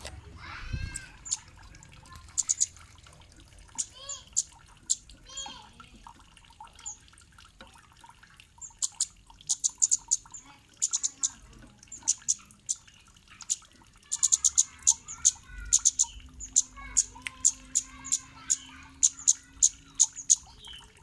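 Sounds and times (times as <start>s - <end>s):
high sharp bird chips: 0.8s - 2.8s, 8.6s - 21.0s
faint lower bird chirping: 0.9s - 2.8s, 8.5s - 21.0s.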